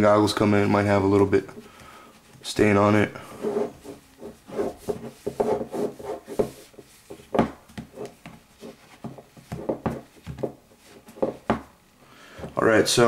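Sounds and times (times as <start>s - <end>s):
rubbing strokes on plastic lens: 3.3s - 11.3s.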